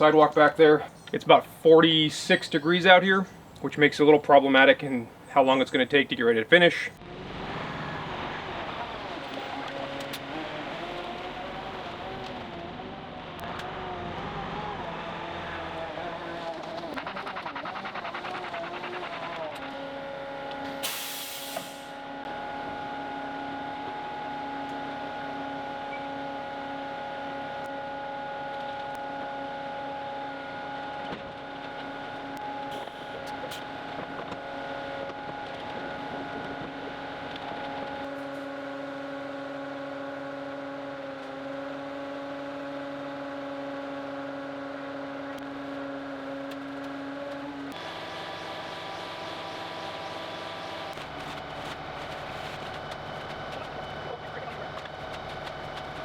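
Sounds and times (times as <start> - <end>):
diesel engine running: 0.0 - 56.0
brief hiss: 20.8 - 21.9.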